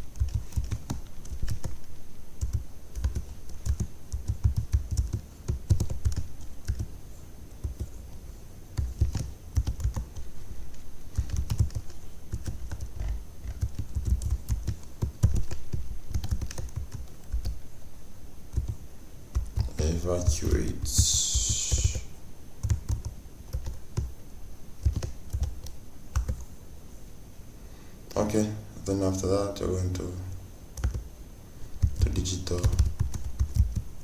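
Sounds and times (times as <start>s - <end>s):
typing on computer keyboard: 0.1s - 6.9s, 7.5s - 8.0s, 8.8s - 10.3s, 11.1s - 17.6s, 18.5s - 19.8s, 22.6s - 24.1s, 24.8s - 26.5s, 30.8s - 31.0s, 31.8s - 33.9s.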